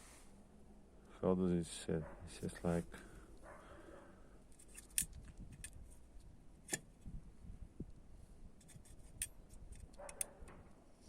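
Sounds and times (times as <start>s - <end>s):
metal lock parts clicking: 4.5s - 5.8s, 8.6s - 10.6s.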